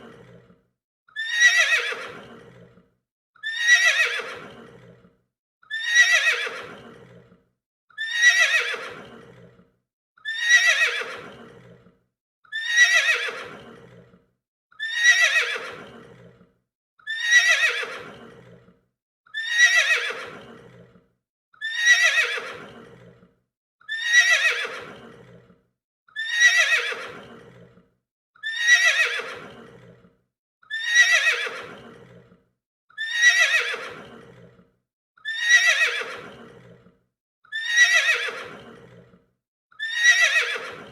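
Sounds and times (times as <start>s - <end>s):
horse whinnying: 1.2s - 2.8s, 3.4s - 5.0s, 5.7s - 7.3s, 8.0s - 9.6s, 10.2s - 11.8s, 12.5s - 14.1s, 14.8s - 16.4s, 17.1s - 18.6s, 19.3s - 20.9s, 21.6s - 23.2s, 23.9s - 25.4s, 26.2s - 27.8s, 28.4s - 30.0s, 30.7s - 32.3s, 33.0s - 34.6s, 35.2s - 36.8s, 37.5s - 39.1s, 39.8s - 40.9s.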